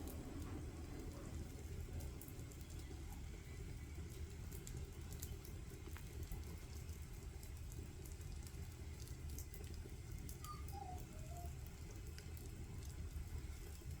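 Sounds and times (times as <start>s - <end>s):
wood fire crackling: 0.0s - 14.0s
squeaky chirp: 10.4s - 11.5s.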